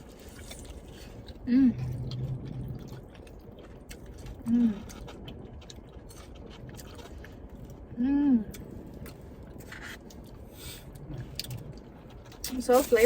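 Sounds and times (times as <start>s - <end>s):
person chewing food: 0.0s - 13.0s
person humming mmm: 8.0s - 8.6s.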